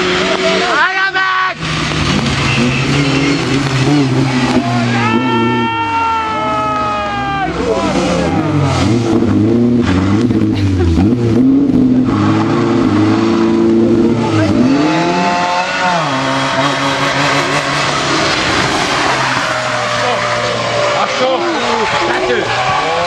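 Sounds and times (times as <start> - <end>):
rally car engine revving: 0.0 - 23.0.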